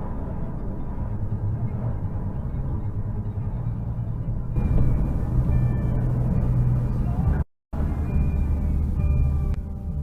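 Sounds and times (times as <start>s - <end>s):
car rumbling on road: 0.0s - 10.0s
music playing: 4.6s - 10.0s.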